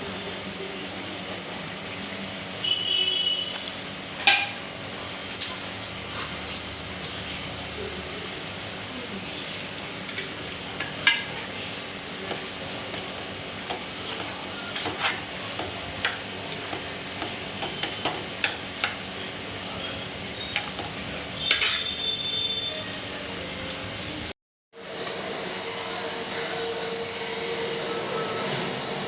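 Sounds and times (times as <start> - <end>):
metal spoon scraping a pan: 3.6 - 22.4
ringing metal clank: 4.0 - 5.0, 8.6 - 19.0, 19.6 - 22.4.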